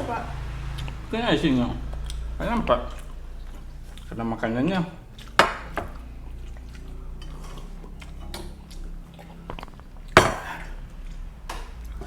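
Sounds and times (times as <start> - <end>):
cutlery clinking on a plate: 5.3 - 8.6.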